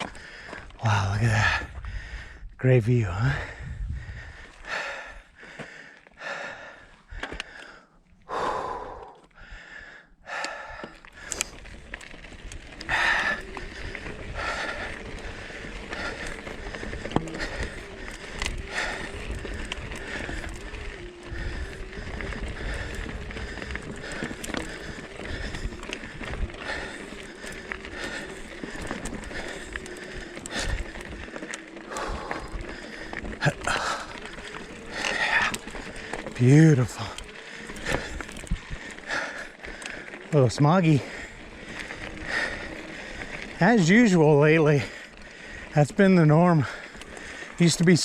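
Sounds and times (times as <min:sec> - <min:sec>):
person panting hard: 0:00.0 - 0:02.6, 0:03.2 - 0:48.0
tyres rattling on rocky trail: 0:00.0 - 0:48.0
electric bike motor whine: 0:10.2 - 0:47.8.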